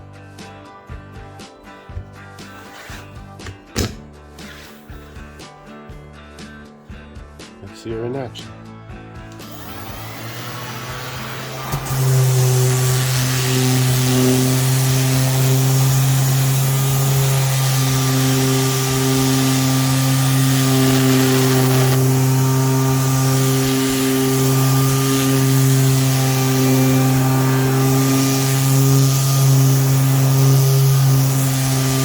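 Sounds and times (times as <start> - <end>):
orbital sander running: 9.4 - 32.0.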